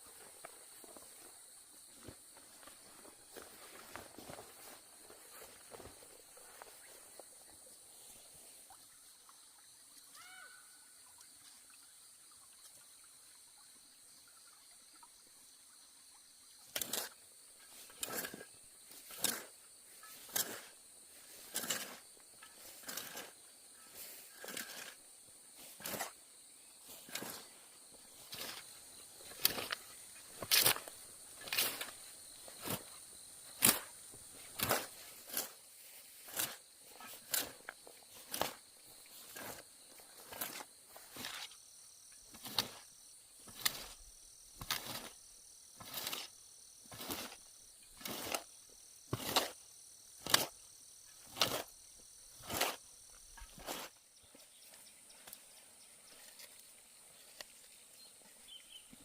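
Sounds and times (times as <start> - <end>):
high insect drone: 13.0 - 59.0.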